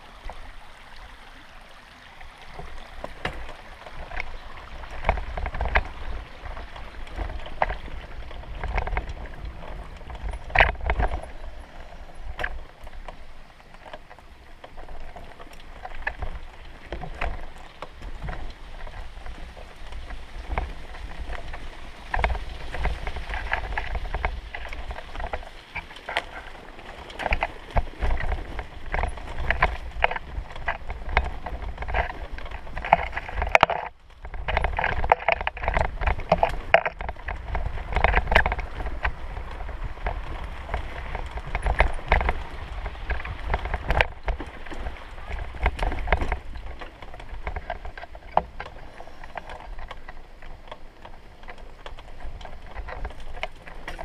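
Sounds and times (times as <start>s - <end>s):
vehicle rumbling on broken road: 0.0s - 54.0s
knocks and rattles: 20.0s - 50.2s.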